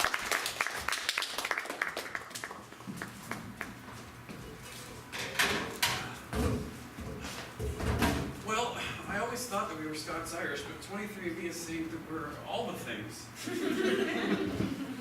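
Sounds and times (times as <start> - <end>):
audience applauding: 0.0 - 3.7.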